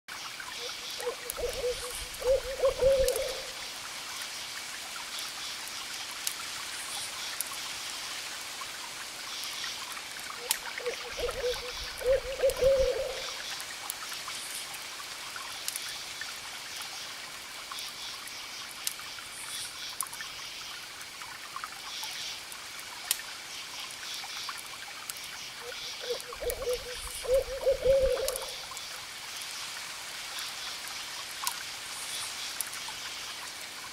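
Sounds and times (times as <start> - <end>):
wood fire hissing and crackling: 0.2 - 33.9
owl hooting: 1.0 - 3.6, 10.4 - 13.4, 25.6 - 28.6.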